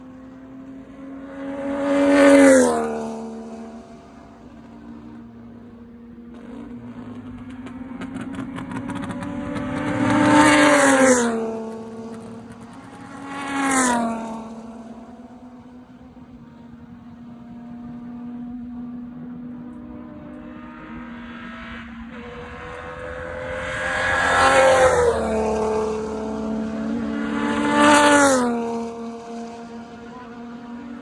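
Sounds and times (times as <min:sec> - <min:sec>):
race cars passing at speed: 0:00.0 - 0:31.0.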